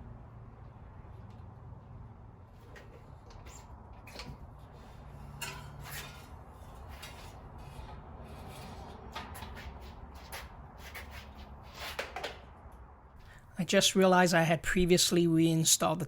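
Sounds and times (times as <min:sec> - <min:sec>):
hands handling bike wheel: 0:02.4 - 0:12.6.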